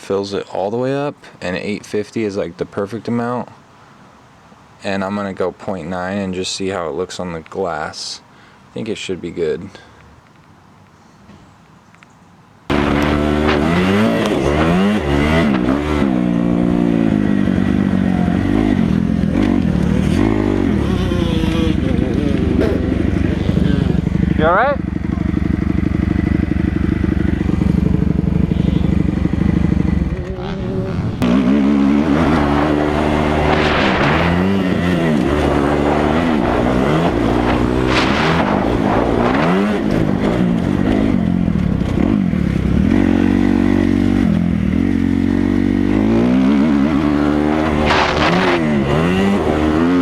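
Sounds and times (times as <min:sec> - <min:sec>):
dirt bike engine revving: 0:12.7 - 0:50.0.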